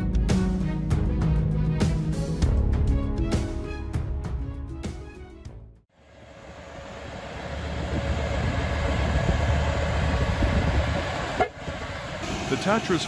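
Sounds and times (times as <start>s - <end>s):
music: 0.0s - 5.8s
heavy truck engine rumbling: 6.0s - 13.0s.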